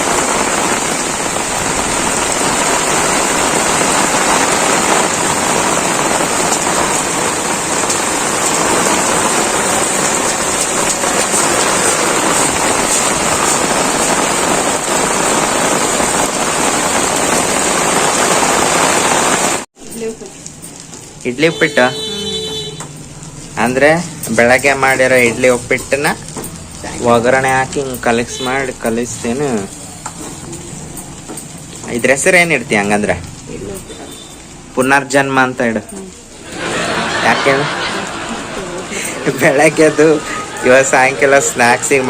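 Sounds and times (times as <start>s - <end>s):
heavy rain pouring: 0.0s - 42.0s.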